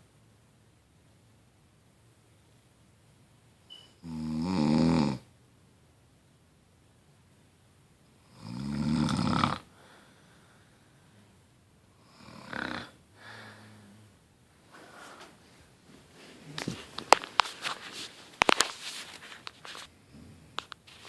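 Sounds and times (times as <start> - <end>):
person snoring: 4.0 - 5.2, 8.3 - 9.7, 12.0 - 14.1
faint breathing: 9.7 - 11.4, 12.0 - 16.6.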